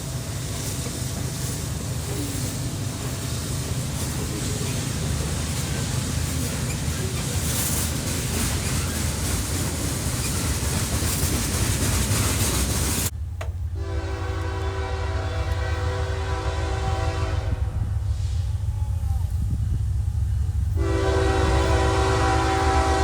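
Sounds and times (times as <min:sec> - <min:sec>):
train rolling noise: 0:00.0 - 0:23.0
deep engine rumble: 0:12.3 - 0:23.0
locomotive air horn chord: 0:13.7 - 0:18.6, 0:20.7 - 0:23.0.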